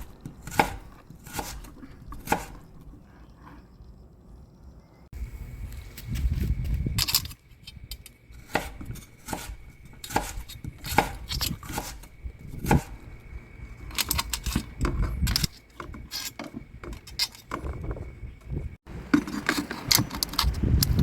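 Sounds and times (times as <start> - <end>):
low rumbling handling noise: 0.0 - 21.0
hard objects clicking and knocking: 13.8 - 21.0.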